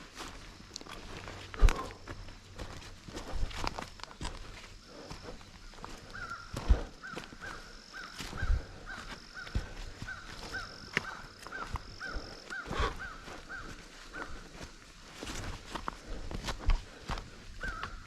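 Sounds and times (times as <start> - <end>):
footsteps: 0.0 - 18.0
bird calling: 3.2 - 14.9, 16.8 - 18.0.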